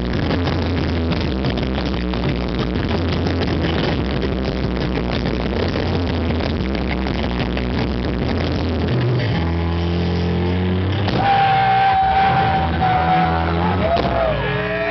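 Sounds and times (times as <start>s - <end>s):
distorted live rock band: 0.0s - 14.9s
low bass notes: 0.0s - 14.9s.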